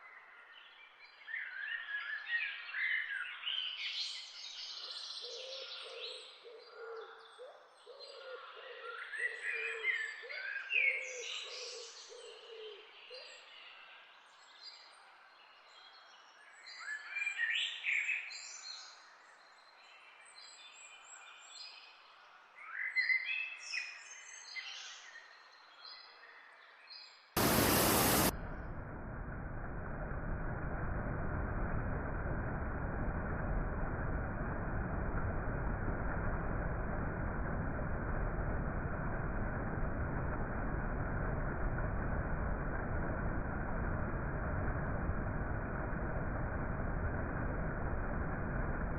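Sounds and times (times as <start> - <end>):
loud burst of noise: 27.4 - 48.9
steady rushing noise: 27.4 - 48.9.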